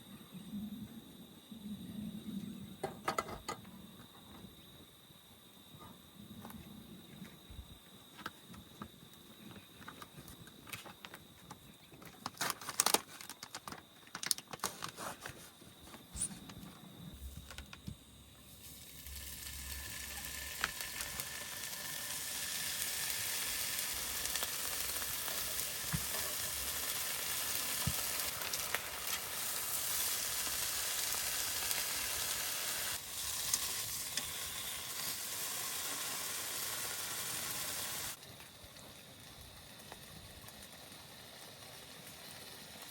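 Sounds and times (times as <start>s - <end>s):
food sizzling in a pan: 18.4s - 42.9s.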